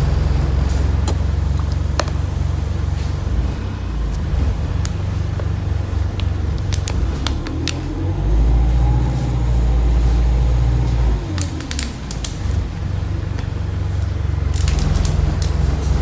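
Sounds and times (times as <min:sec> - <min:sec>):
bus engine rumble: 0:00.0 - 0:16.0
scattered clicks: 0:06.1 - 0:08.0, 0:10.8 - 0:12.8, 0:13.4 - 0:16.0.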